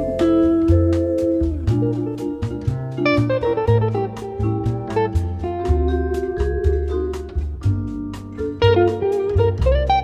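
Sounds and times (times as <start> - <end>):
instrumental guitar music with drums: 0.0 - 10.0.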